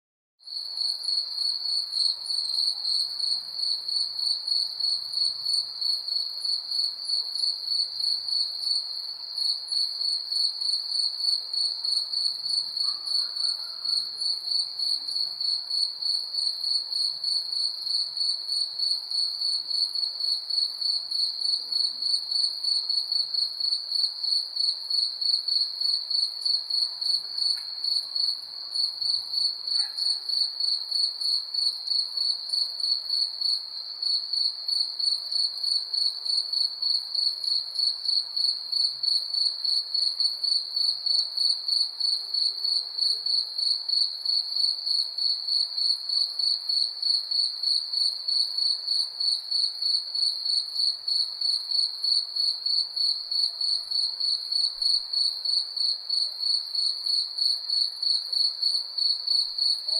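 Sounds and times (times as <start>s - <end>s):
crickets chirping: 23.6s - 59.9s.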